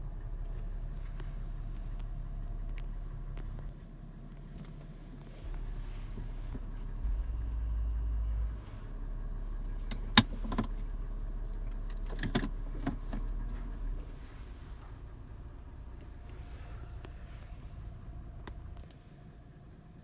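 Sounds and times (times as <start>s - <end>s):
engine idling: 0.0s - 20.0s
sharp clicks and knocks: 9.8s - 10.8s.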